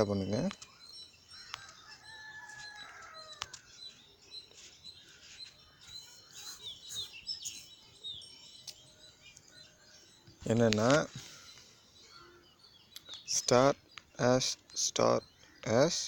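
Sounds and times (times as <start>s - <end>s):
small birds chirping: 0.0s - 16.0s
rooster crowing: 1.5s - 3.7s.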